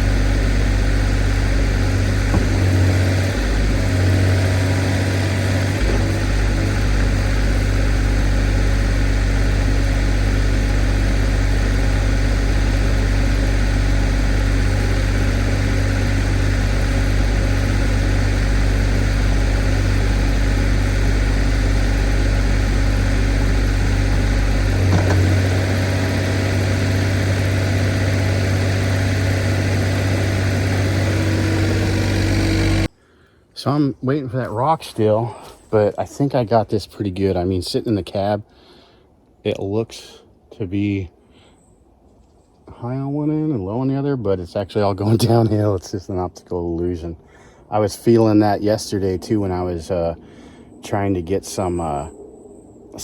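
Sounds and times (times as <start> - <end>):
diesel excavator engine humming: 0.0 - 33.0
short knock: 2.3 - 3.0.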